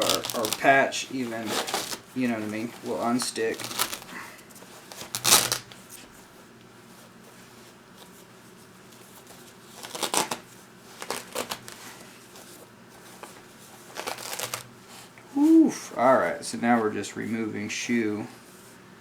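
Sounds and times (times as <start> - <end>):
plastic wrapping tearing off: 0.0 - 4.2, 4.8 - 5.8, 9.7 - 10.4, 11.0 - 11.8, 13.9 - 14.7.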